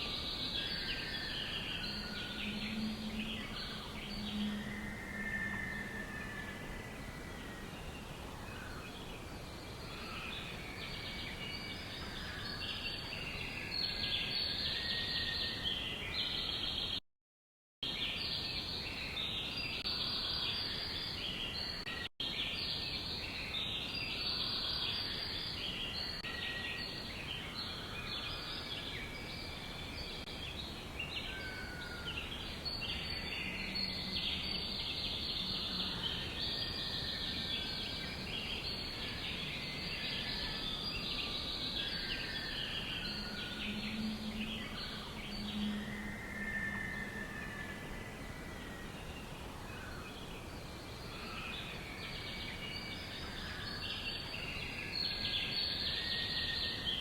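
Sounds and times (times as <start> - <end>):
small birds chirping: 17.8 - 57.0.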